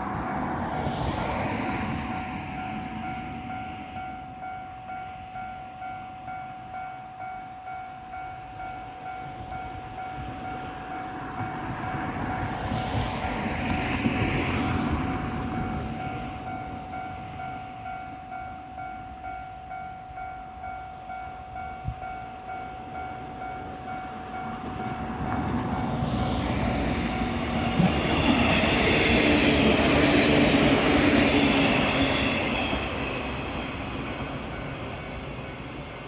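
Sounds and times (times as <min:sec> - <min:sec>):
train wheels squealing on rails: 0:00.4 - 0:06.8, 0:09.3 - 0:17.9, 0:22.9 - 0:36.0
level-crossing warning bell: 0:01.0 - 0:36.0.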